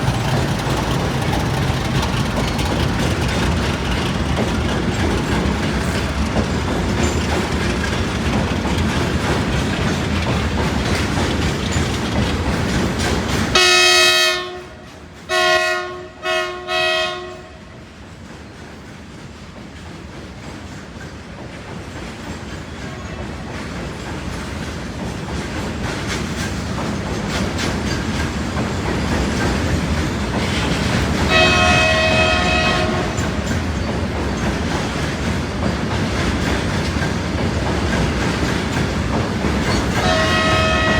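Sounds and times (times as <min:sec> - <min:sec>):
train rumble: 0:00.0 - 0:40.9
train wheels clattering: 0:00.0 - 0:40.9
locomotive horn blasts: 0:13.5 - 0:17.6, 0:31.3 - 0:33.4, 0:40.0 - 0:40.9.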